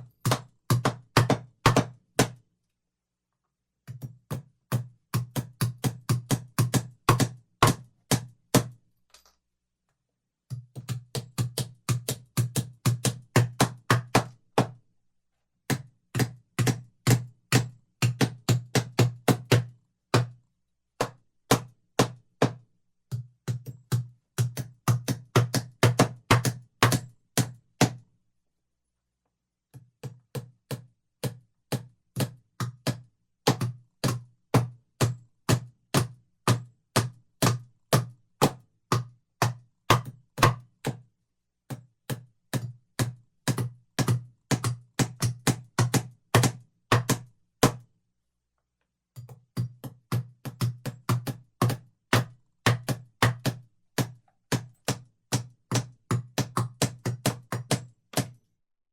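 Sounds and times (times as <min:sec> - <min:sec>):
hammering on wood: 0:00.2 - 0:02.4, 0:21.0 - 0:28.0, 0:41.7 - 0:47.8, 0:49.2 - 0:58.4.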